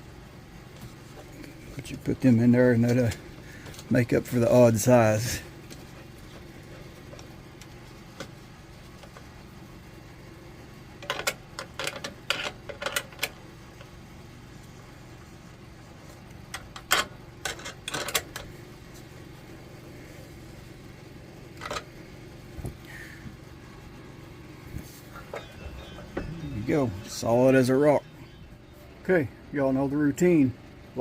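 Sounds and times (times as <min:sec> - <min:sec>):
faint steady hum: 0:00.0 - 0:31.0
vise clicks and knocks: 0:11.0 - 0:13.4, 0:16.5 - 0:18.5.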